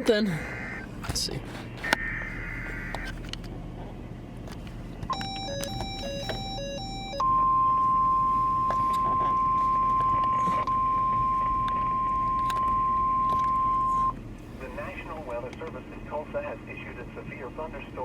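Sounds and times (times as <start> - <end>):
steady warning alarm tone: 0.0 - 3.1, 5.1 - 15.0
low vehicle rumble: 0.0 - 18.0
stepped electronic beeps: 5.1 - 14.2.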